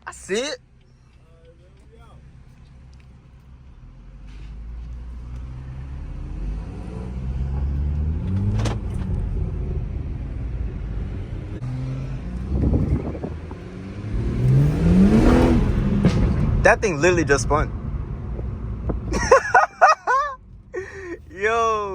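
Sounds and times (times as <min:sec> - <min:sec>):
tires spinning: 0:00.1 - 0:21.9
car engine revving hard: 0:05.5 - 0:17.6.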